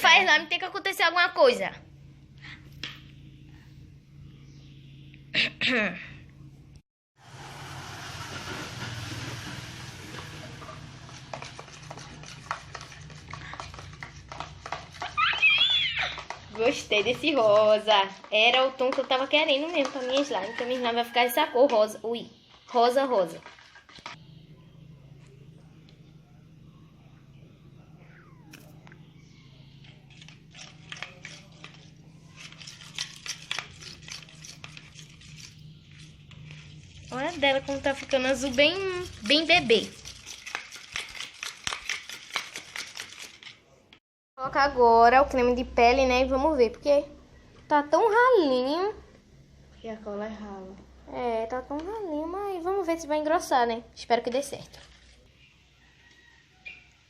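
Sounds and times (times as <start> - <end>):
spoon scraping in a bowl: 10.1 - 24.3, 28.6 - 43.6
low hum: 24.0 - 39.3.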